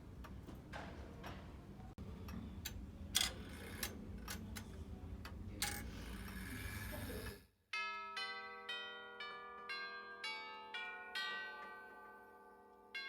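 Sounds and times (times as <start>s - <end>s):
clock ticking: 2.0s - 7.4s.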